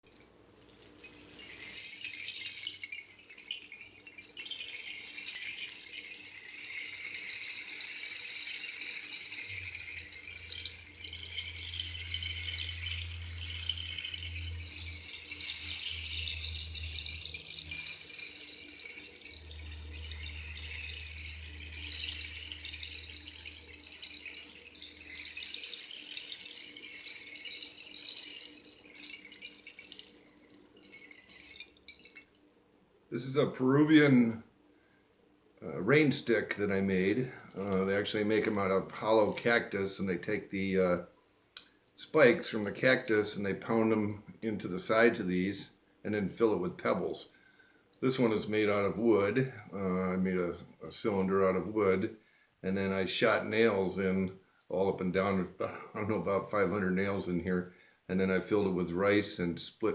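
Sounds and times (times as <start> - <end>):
rain stick hissing: 0.0 - 32.4.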